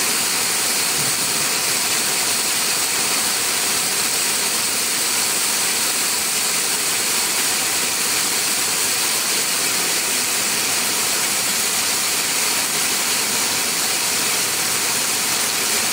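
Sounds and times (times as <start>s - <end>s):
sprinkler spraying water: 0.0s - 15.9s.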